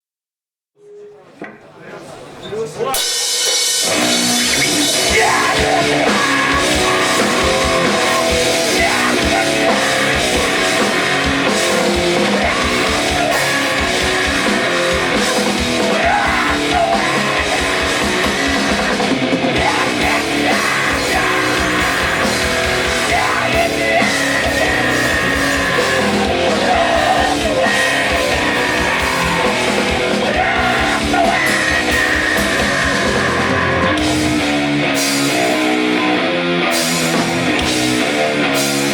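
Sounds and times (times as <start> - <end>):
distorted guitars: 2.9 - 38.9
fast driving drums: 2.9 - 38.9
person yelling vocals: 4.9 - 19.0, 19.6 - 34.2.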